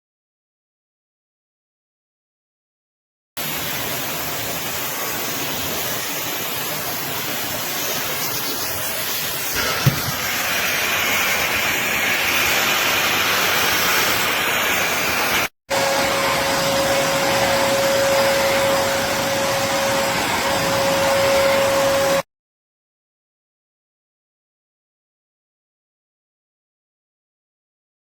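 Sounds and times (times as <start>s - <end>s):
vacuum cleaner motor running: 3.5s - 22.2s
steady motor whine: 9.6s - 10.5s, 15.7s - 22.2s.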